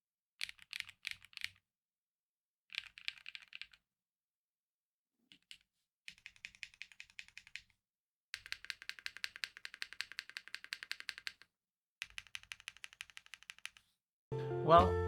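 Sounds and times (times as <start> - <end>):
keyboard typing: 2.7 - 3.8, 5.3 - 7.7, 8.4 - 13.8.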